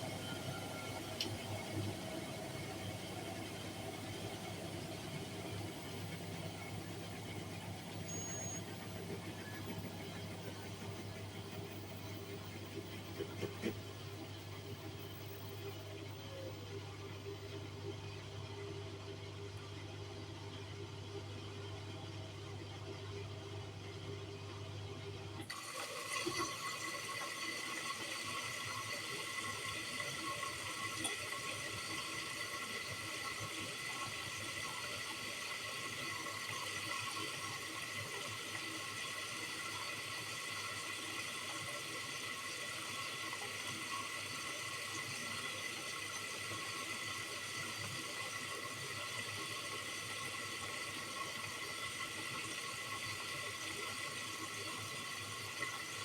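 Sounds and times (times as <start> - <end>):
water rushing into washing machine: 0.0 - 15.4, 25.4 - 56.0
faint thin whistle: 7.9 - 9.6.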